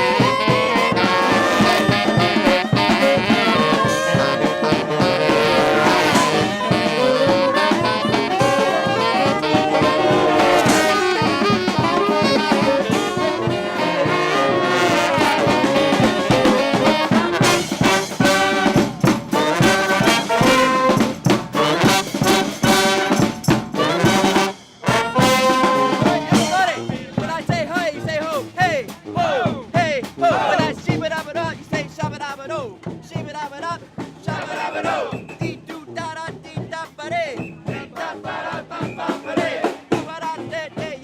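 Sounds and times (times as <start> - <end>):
brass band playing: 0.0 - 32.4, 33.2 - 41.0
drum hits: 14.9 - 32.2.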